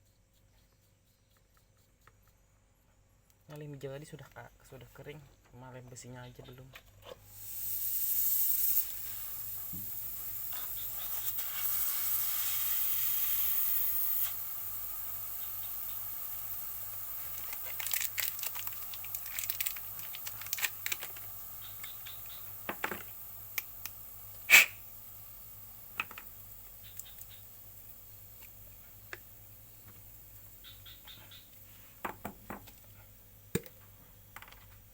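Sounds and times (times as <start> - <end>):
pressurised gas hissing: 7.3 - 28.1.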